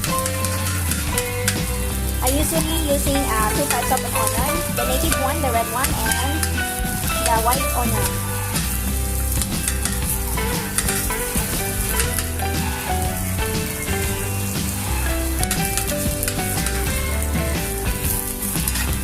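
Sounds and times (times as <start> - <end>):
background music: 0.0 - 19.0
onions sizzling in hot oil: 0.0 - 19.0
spatula scraping a wok: 0.1 - 19.0.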